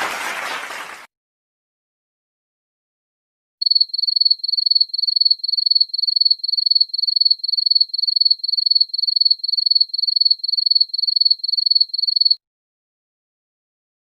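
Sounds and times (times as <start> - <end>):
cricket chirping: 3.6 - 12.4.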